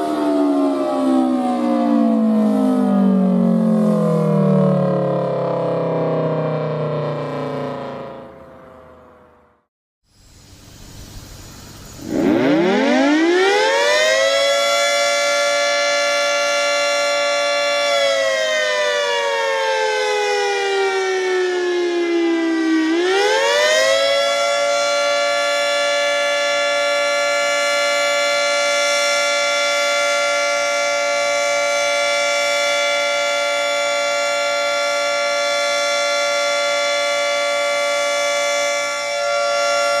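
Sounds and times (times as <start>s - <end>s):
warning siren winding: 12.0s - 18.3s.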